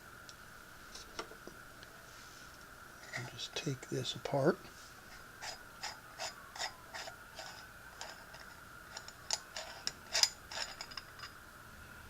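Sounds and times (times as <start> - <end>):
metal parts clicking and tapping: 5.4 - 11.4.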